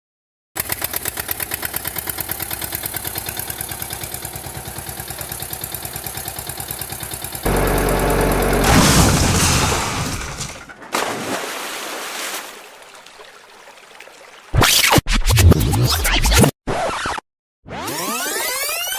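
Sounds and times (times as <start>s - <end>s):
tractor engine idling and revving: 0.6s - 10.8s.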